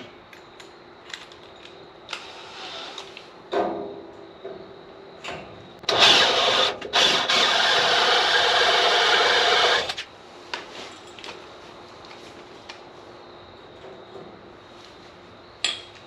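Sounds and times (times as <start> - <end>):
electric drill boring into steel: 2.2 - 3.0, 5.9 - 10.0.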